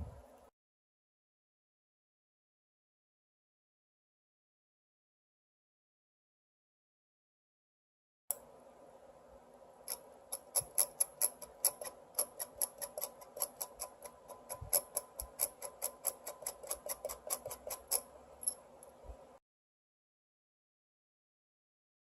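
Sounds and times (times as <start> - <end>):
rapid sharp clicks: 9.9 - 18.6.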